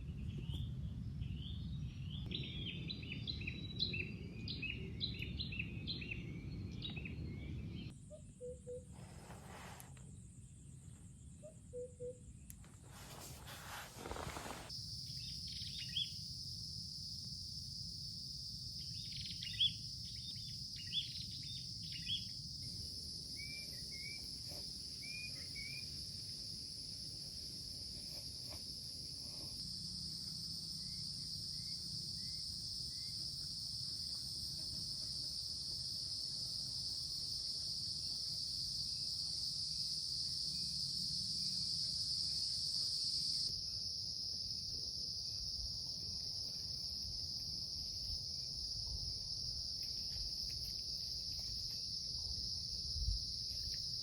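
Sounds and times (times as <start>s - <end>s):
insect chorus with crickets: 0.0s - 54.0s
small birds chirping: 14.0s - 16.2s, 18.8s - 22.8s.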